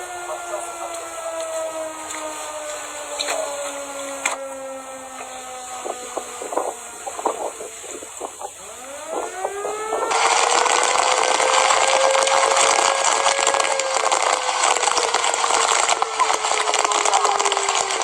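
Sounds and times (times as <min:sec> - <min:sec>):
power saw cutting wood: 0:00.0 - 0:18.0.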